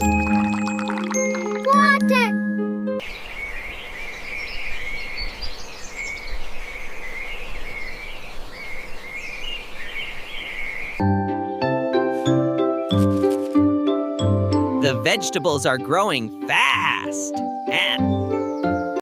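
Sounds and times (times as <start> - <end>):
music: 0.0 - 3.0, 11.0 - 19.0
birds chirping: 3.0 - 11.7, 14.9 - 19.0.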